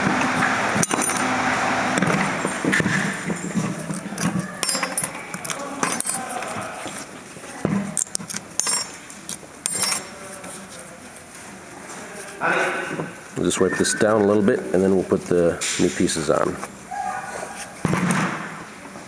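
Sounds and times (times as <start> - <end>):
metal clips clicking and scraping: 0.8 - 1.3, 2.0 - 10.6.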